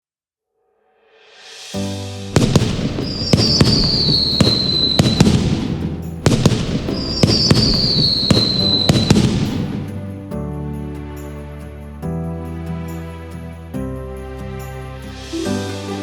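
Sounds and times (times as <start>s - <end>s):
firework bangs: 2.3s - 10.4s
high falling whistle: 2.4s - 5.8s, 6.9s - 10.0s.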